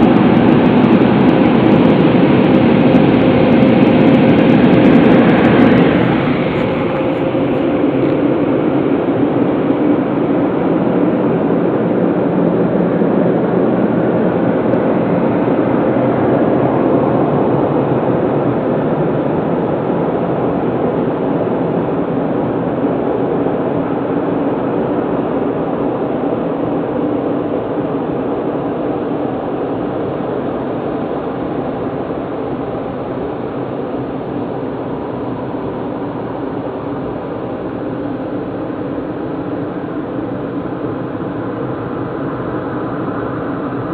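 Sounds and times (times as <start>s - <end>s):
car wash machine rushing: 0.0s - 9.2s
faint hum: 0.0s - 43.9s.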